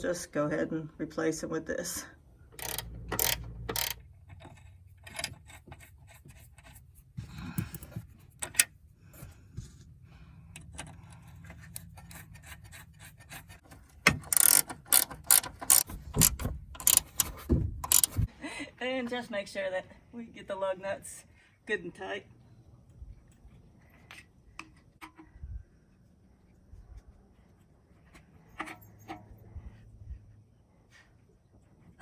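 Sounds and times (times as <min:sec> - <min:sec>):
socket ratchet clicking: 0:02.6 - 0:04.0, 0:14.1 - 0:18.3
metal tools clinking: 0:07.4 - 0:08.7, 0:13.7 - 0:18.3.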